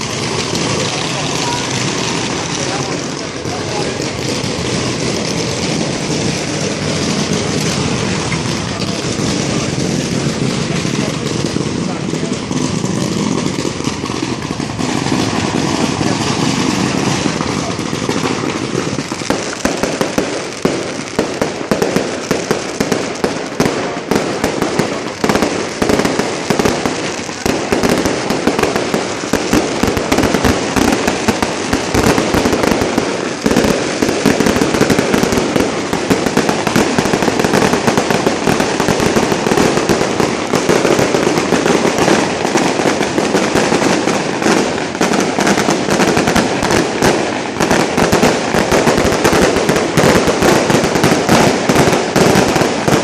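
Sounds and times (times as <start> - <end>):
firecrackers popping and crackling: 0.0 - 53.0.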